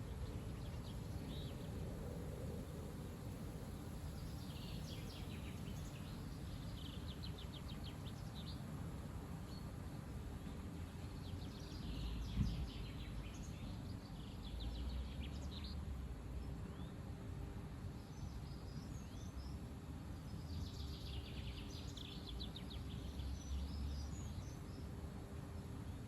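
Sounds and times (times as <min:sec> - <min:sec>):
wind buffeting microphone: 0:12.2 - 0:12.9.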